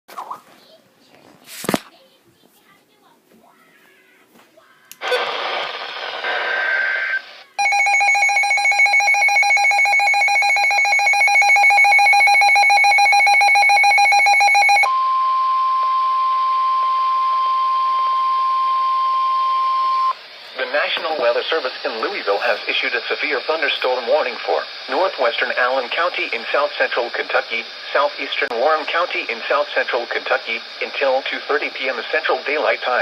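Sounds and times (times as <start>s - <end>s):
digital data screech: 5.0s - 7.4s
pure steady warning tone: 5.0s - 33.0s.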